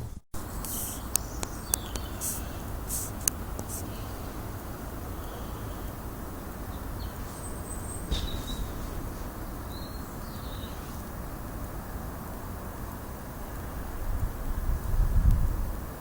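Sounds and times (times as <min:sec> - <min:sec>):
faint bird chirps: 0:00.8 - 0:02.6.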